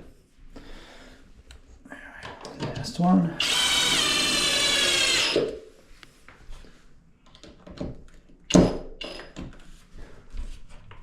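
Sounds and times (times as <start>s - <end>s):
power drill: 3.4s - 5.6s.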